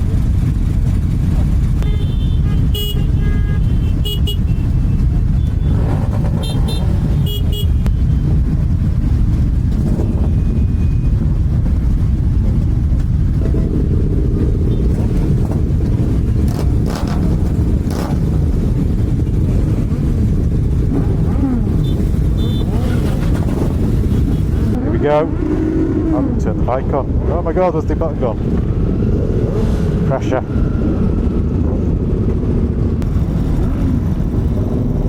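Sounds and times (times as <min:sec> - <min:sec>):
short horn toots: 0:21.8 - 0:23.2.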